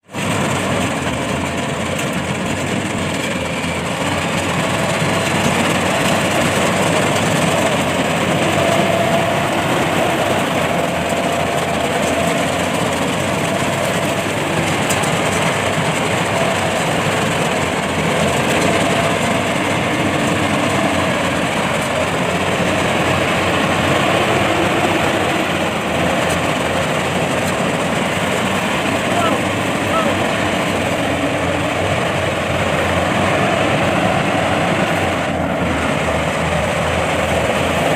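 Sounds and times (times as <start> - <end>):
combine harvester engine running: 0.0 - 37.9.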